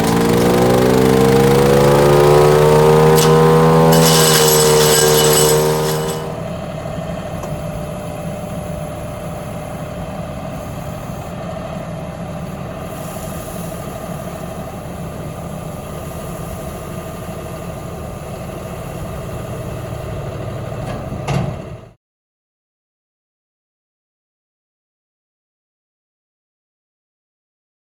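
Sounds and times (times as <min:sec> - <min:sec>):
engine idling: 0:00.0 - 0:21.9.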